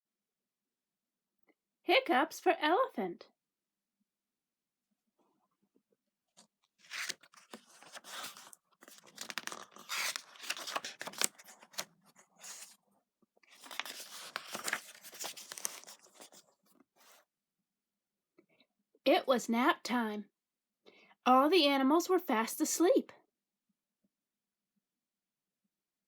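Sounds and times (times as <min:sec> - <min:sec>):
book pages turning: 0:06.4 - 0:12.8, 0:13.4 - 0:17.2
paper rustling and crinkling: 0:06.4 - 0:12.8, 0:13.4 - 0:17.2.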